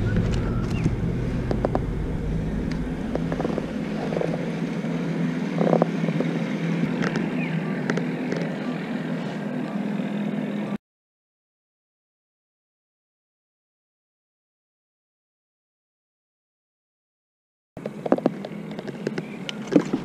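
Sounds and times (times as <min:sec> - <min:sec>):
motorboat engine hum: 0:00.0 - 0:10.8, 0:17.8 - 0:20.0.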